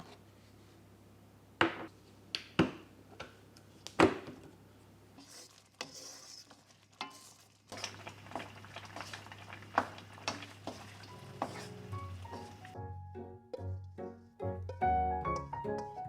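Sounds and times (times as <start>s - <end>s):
utensil knocking on cookware: 9.7s - 12.6s.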